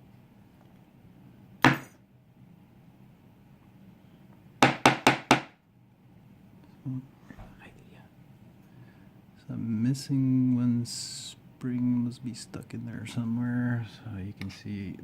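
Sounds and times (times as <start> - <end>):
knocks on hard surface: 4.6 - 5.6.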